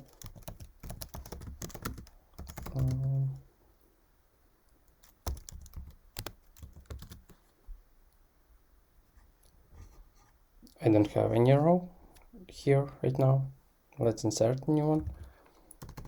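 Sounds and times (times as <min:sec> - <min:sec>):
typing on computer keyboard: 0:00.0 - 0:03.2, 0:05.0 - 0:07.4, 0:15.1 - 0:16.0.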